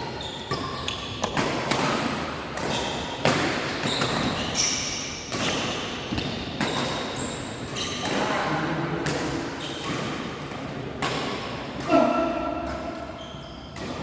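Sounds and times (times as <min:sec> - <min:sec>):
shoe squeaks on court floor: 0:00.0 - 0:01.8, 0:02.6 - 0:08.1, 0:12.8 - 0:14.0
racket striking shuttlecock: 0:00.5 - 0:08.3.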